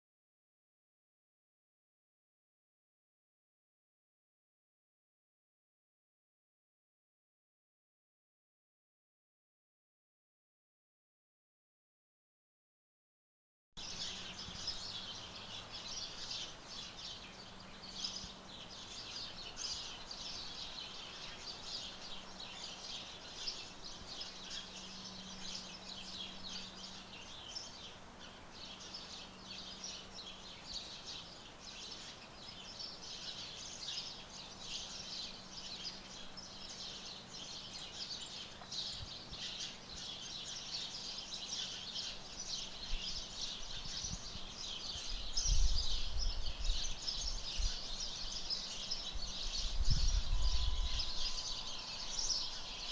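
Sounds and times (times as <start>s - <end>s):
birds chirping: 13.8s - 52.9s
faint low hum: 13.8s - 52.9s.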